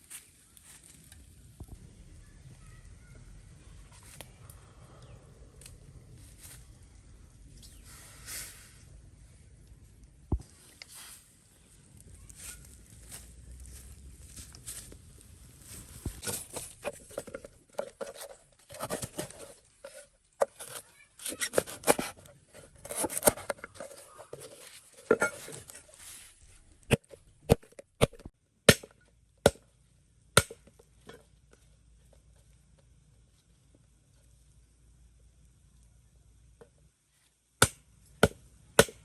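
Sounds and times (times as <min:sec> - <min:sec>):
rustling and scraping handling: 0:10.4 - 0:28.3.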